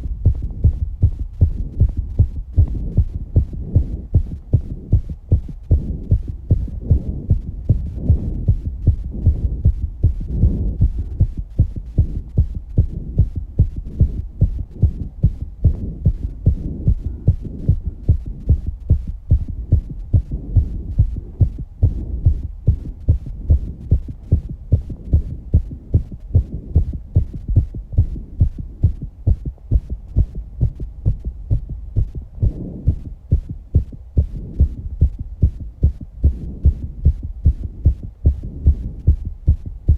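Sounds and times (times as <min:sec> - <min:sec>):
fast heartbeat thumps: 0:00.0 - 0:39.9
heavy breathing: 0:15.7 - 0:18.8.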